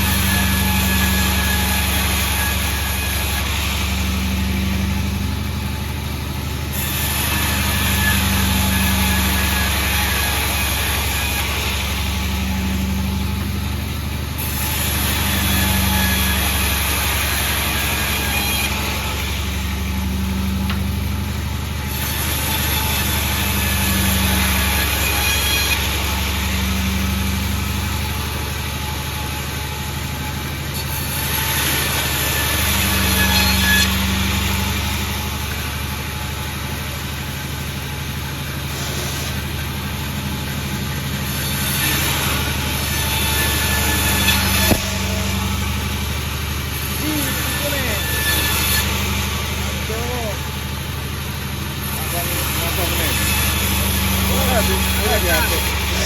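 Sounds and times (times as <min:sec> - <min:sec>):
sawmill engine humming: 0:00.0 - 0:56.0
high hiss of saw: 0:38.7 - 0:40.5, 0:51.9 - 0:56.0.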